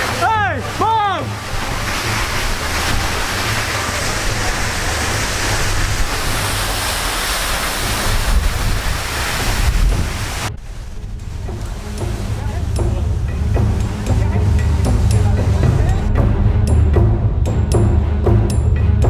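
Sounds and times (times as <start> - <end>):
waterfall roaring: 0.0 - 16.1
wind buffeting microphone: 1.3 - 16.2.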